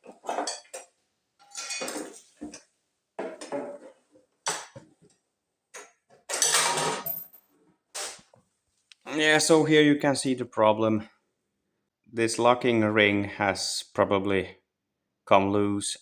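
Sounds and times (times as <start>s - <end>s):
hand tools and metal parts clattering: 0.0s - 5.1s, 5.7s - 8.3s.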